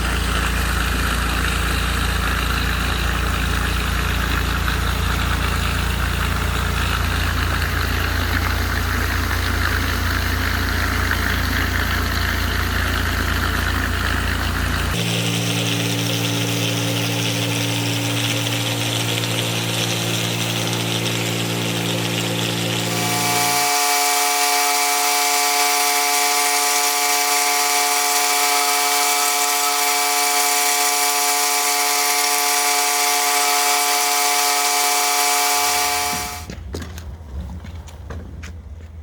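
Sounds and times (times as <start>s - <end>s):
surface cleaner hum and whine: 0.0s - 36.5s.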